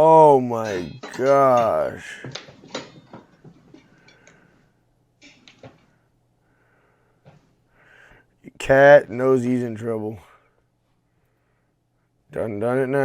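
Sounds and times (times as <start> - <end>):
object clunks and knocks: 2.2 - 3.9.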